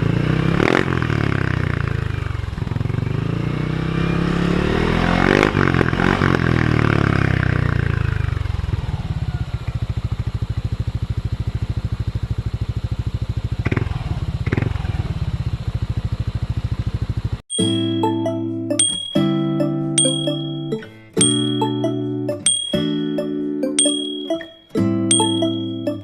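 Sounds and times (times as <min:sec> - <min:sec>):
scooter engine revving and idling: 0:00.0 - 0:17.4.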